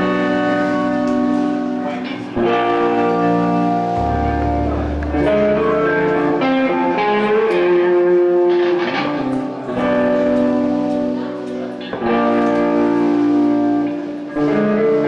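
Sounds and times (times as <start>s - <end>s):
ringing guitar chords: 0.0s - 15.0s
low bass note: 2.4s - 6.2s.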